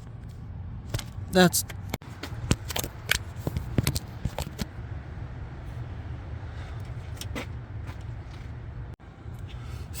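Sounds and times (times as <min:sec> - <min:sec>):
handling clicks and rustles: 0:00.0 - 0:04.8.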